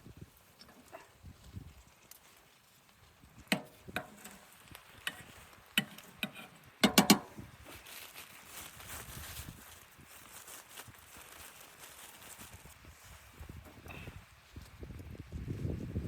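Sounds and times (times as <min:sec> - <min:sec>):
hard objects knocking: 0:05.8 - 0:07.3.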